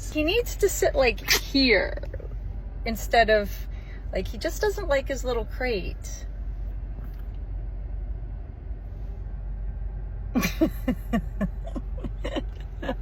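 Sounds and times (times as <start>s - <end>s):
car engine idling: 0.0s - 13.0s.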